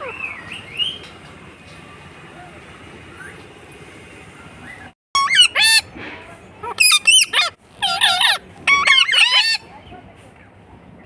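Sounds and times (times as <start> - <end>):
parrot calling: 5.2 - 5.9, 6.6 - 9.6.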